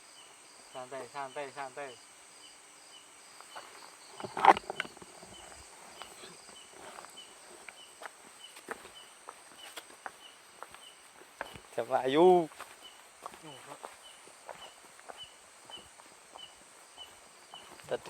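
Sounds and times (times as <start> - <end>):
crickets chirping: 0.0 - 18.0
high insect drone: 0.0 - 18.0
light clicks and crunches: 3.5 - 7.8.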